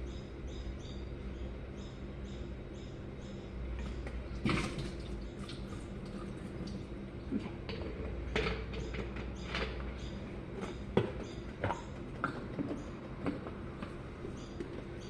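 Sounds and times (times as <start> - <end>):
low steady hum: 0.0 - 15.0
water filling bottles: 3.8 - 9.8.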